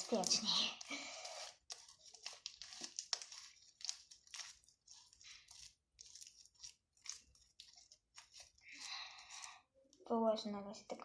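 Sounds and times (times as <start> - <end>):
slime clicks and crackles: 0.0 - 8.6.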